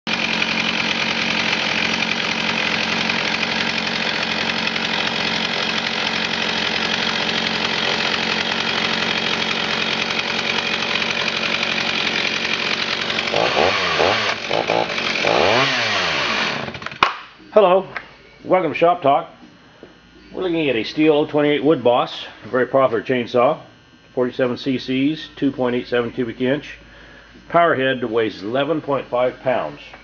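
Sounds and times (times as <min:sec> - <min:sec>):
chainsaw running and revving: 0:00.1 - 0:17.0.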